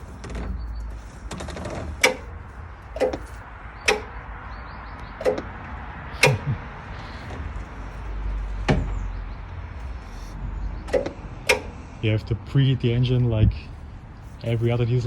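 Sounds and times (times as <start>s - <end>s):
sharp knocks and clicks: 0.0s - 7.7s, 8.6s - 10.0s, 10.8s - 11.8s.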